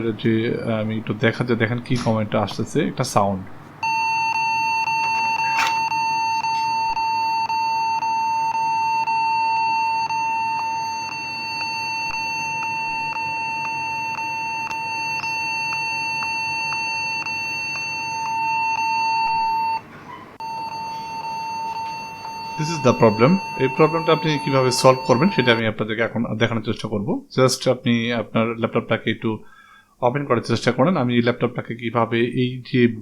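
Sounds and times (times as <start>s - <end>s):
laptop high electronic beep: 3.8s - 19.8s, 20.4s - 25.6s.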